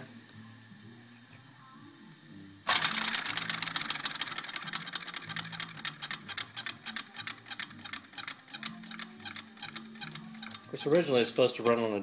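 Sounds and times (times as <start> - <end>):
toy steam engine ticking: 2.7 - 12.0.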